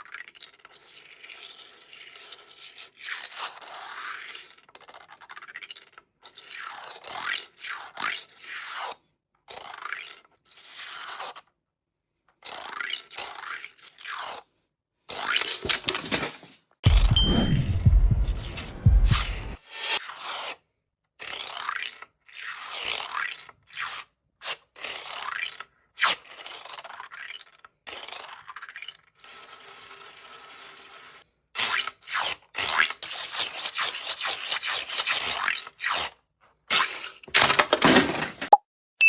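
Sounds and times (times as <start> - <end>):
plastic segments scraping and sliding: 32.1 - 38.6.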